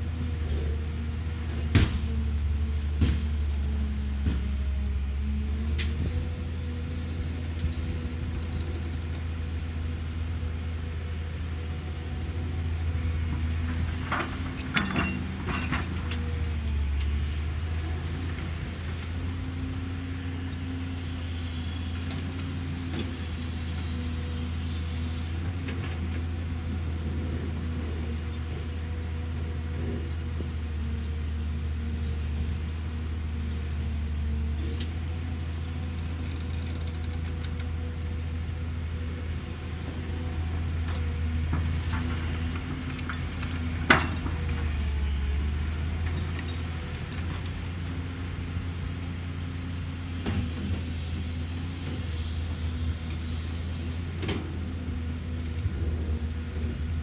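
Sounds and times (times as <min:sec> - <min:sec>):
excavator diesel engine running: 0:00.0 - 0:57.0
metallic clanks: 0:14.5 - 0:16.0.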